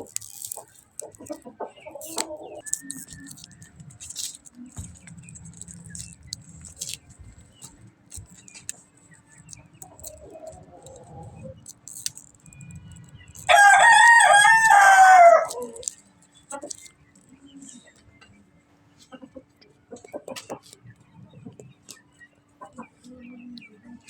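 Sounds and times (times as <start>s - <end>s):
low background rumble: 0.0s - 17.9s
rooster crowing: 13.4s - 15.8s.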